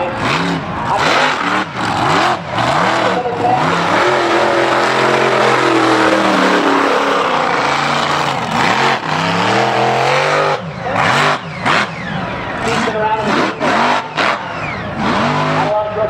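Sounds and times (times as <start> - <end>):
truck engine revving: 0.2 - 15.8
tires spinning in mud: 1.0 - 9.7.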